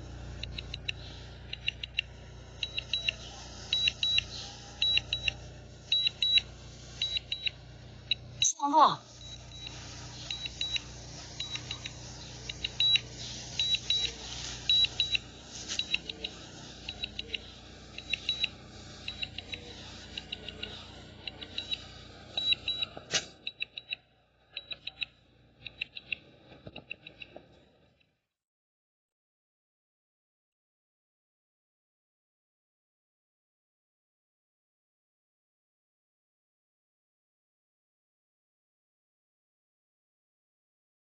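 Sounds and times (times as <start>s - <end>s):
low steady hum: 0.0s - 26.1s
electronic warning beeps: 0.0s - 26.2s
click: 0.4s - 4.2s, 22.4s - 24.0s, 24.6s - 27.5s.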